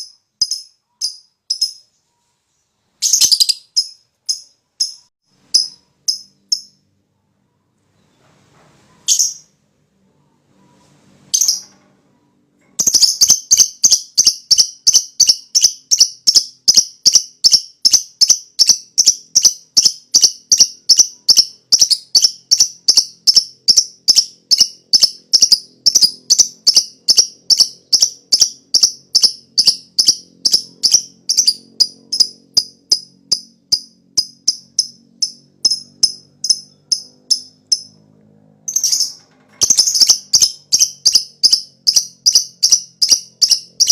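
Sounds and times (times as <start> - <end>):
lovebird chattering call: 12.8 - 38.0, 38.7 - 43.9.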